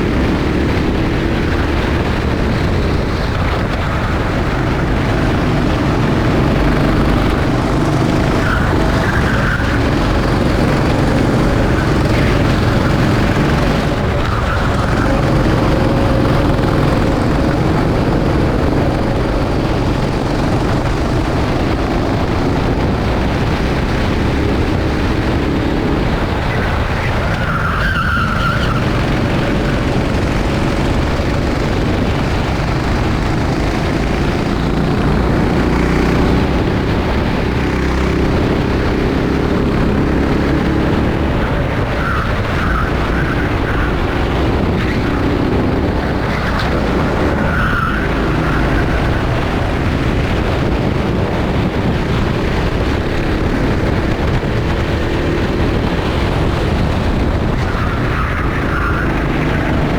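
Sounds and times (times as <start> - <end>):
racing kart engines: 0.0 - 59.9
tyre squeal: 3.6 - 22.1, 26.5 - 30.8, 46.3 - 49.4, 57.5 - 59.8.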